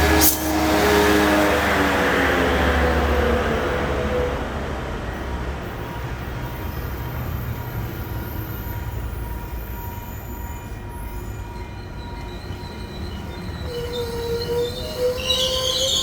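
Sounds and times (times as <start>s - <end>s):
train rumbling: 0.0s - 16.0s
wheels squealing: 6.0s - 16.0s.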